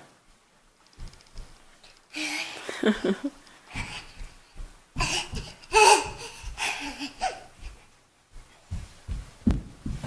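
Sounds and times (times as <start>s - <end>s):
young child laughing: 2.2s - 4.4s, 5.0s - 7.8s.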